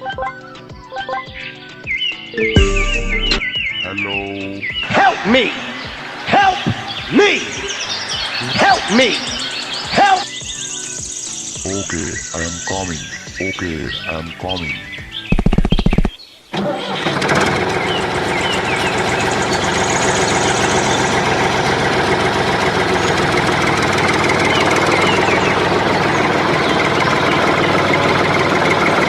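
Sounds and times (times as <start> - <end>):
faint bird chirps: 5.6 - 16.6
engine running: 16.6 - 29.0.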